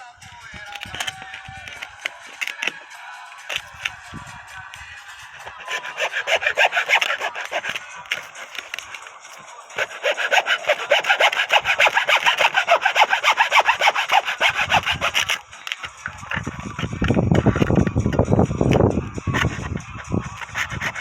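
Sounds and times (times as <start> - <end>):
sandpaper rubbing on wood: 3.5 - 15.5, 18.8 - 21.0.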